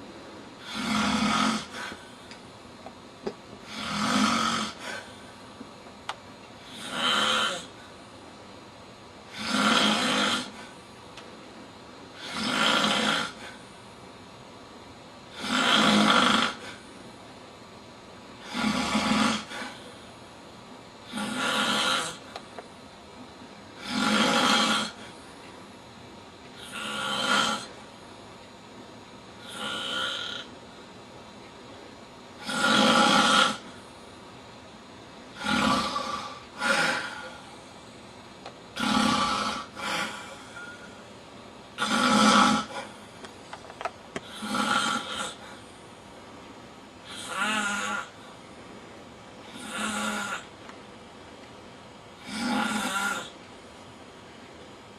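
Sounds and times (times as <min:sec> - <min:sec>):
man snoring: 0:00.6 - 0:02.1, 0:03.6 - 0:05.2, 0:06.6 - 0:07.8, 0:09.3 - 0:10.8, 0:12.2 - 0:13.6, 0:15.3 - 0:16.8, 0:18.4 - 0:20.0, 0:21.0 - 0:22.3, 0:23.8 - 0:25.2, 0:26.6 - 0:27.8, 0:29.4 - 0:30.5, 0:32.4 - 0:33.8, 0:35.3 - 0:37.6, 0:38.8 - 0:41.0, 0:41.8 - 0:43.0, 0:44.2 - 0:45.6, 0:47.0 - 0:48.3, 0:49.5 - 0:50.5, 0:52.2 - 0:53.4.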